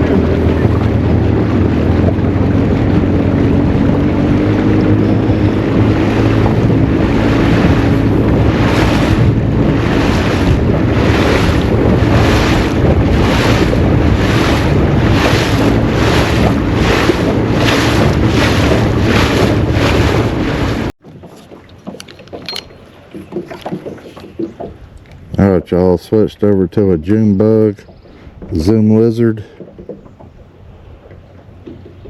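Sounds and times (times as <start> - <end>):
wind noise on microphone: 0.0 - 20.9
boat motor humming: 0.0 - 32.0
regular whooshing pulse: 5.3 - 20.9.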